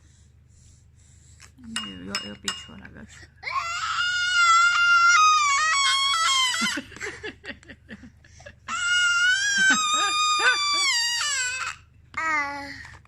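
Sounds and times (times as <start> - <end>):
baby screeching: 3.4 - 6.8, 8.7 - 12.4.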